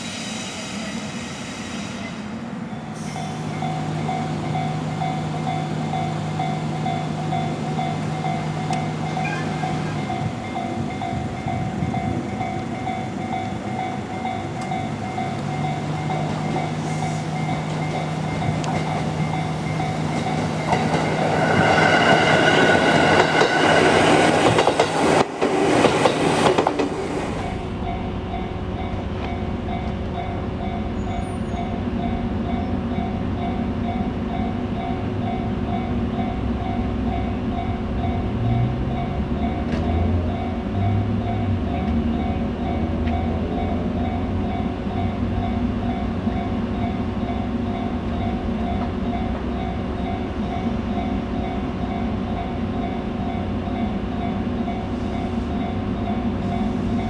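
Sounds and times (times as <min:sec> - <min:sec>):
level crossing warning bell: 0:02.7 - 0:24.7, 0:27.5 - 0:57.0
electric train running: 0:03.2 - 0:57.0
train wheel clatter: 0:08.7 - 0:28.0.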